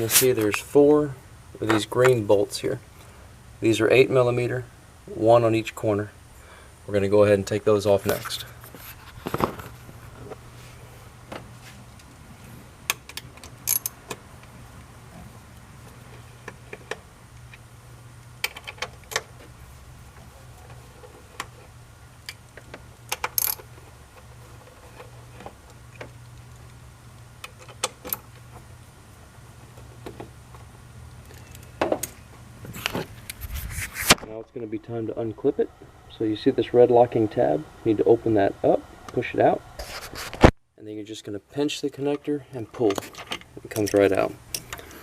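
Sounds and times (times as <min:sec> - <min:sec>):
steady low hum: 0:00.0 - 0:45.0
metallic clicks of hand tools: 0:12.9 - 0:14.2.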